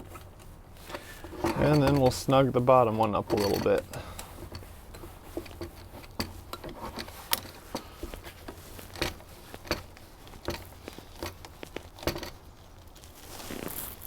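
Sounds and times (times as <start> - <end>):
hose clamp clicking: 0.0 - 12.4.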